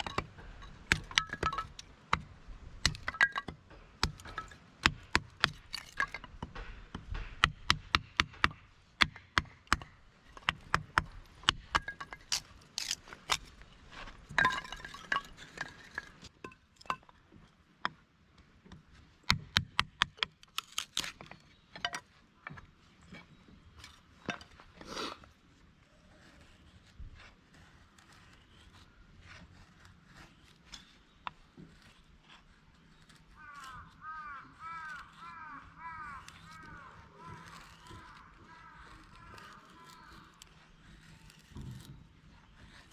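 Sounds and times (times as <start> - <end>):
hard objects clinking and knocking: 0.0 - 2.2, 2.9 - 7.7, 14.2 - 17.2
scraping rustle: 23.2 - 42.9.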